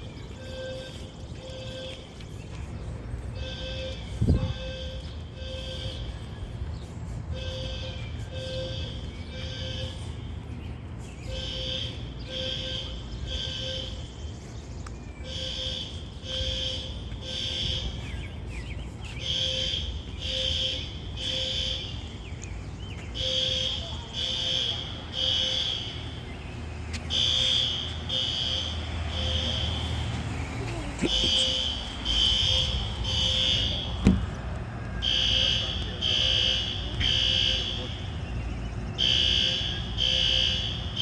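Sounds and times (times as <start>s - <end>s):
fire alarm beeping: 0.0s - 2.4s, 3.3s - 6.6s, 7.3s - 10.5s, 11.2s - 14.3s, 15.2s - 18.3s, 19.1s - 22.1s, 23.1s - 26.2s, 27.1s - 30.0s, 31.0s - 34.3s, 35.0s - 38.2s, 39.0s - 41.0s.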